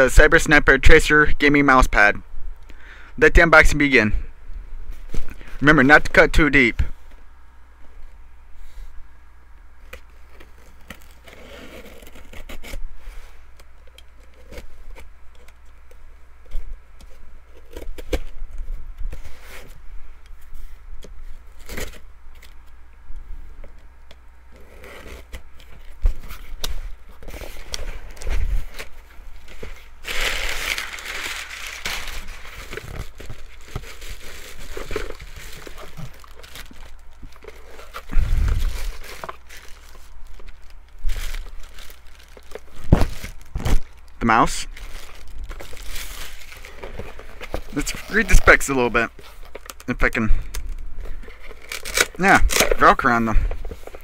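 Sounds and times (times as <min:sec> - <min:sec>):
packaging crinkling and scraping: 0:09.8 - 0:15.7, 0:21.3 - 0:22.7, 0:24.5 - 0:54.0
packaging tearing: 0:10.4 - 0:12.8, 0:27.2 - 0:49.9, 0:51.4 - 0:54.0.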